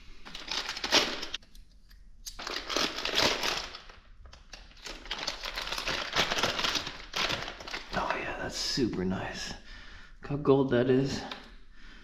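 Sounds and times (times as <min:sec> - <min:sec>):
packaging crinkling and rustling: 0:00.2 - 0:01.4, 0:02.3 - 0:08.1.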